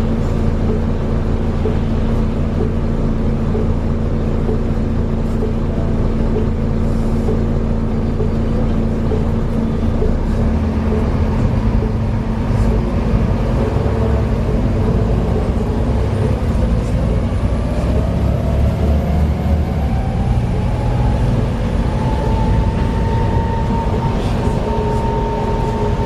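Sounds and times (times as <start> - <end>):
bus engine and road rumble: 0.0 - 26.0
rising driveline whine: 11.0 - 26.0.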